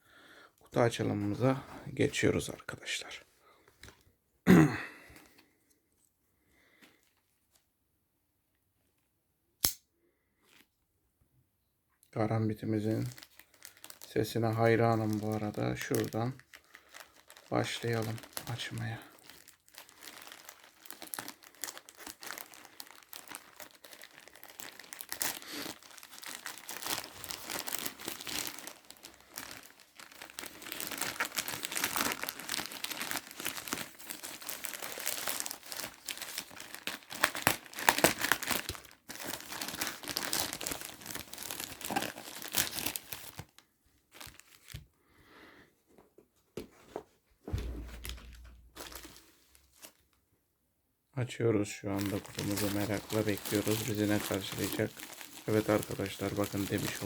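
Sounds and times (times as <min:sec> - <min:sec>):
plastic and bubble wrap crinkling: 0:12.4 - 0:44.9, 0:46.9 - 0:50.2, 0:51.8 - 0:57.0
rustling: 0:46.6 - 0:50.0
low thump: 0:47.5 - 0:48.8.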